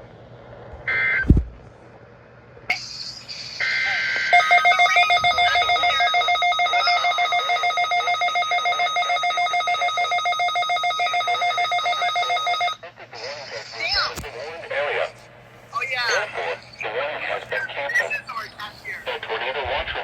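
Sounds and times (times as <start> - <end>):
screeching digital data bursts: 2.7 - 12.8
pulsing electronic alert tone: 3.6 - 12.8.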